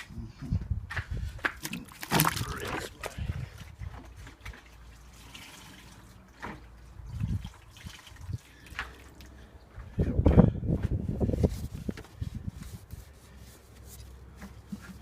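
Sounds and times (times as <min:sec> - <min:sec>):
low wind rumble on microphone: 0:00.0 - 0:01.5, 0:03.0 - 0:04.2, 0:07.0 - 0:08.5, 0:09.7 - 0:13.2
liquid spurting and dripping: 0:01.6 - 0:09.5.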